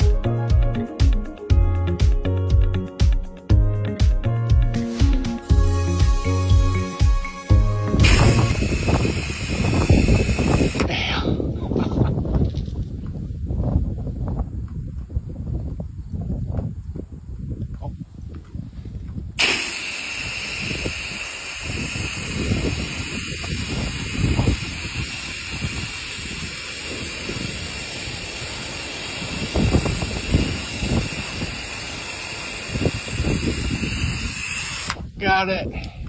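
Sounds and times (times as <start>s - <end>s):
pressure washer spraying hiss: 4.8s - 10.9s, 19.4s - 35.0s
wind buffeting microphone: 7.9s - 36.0s.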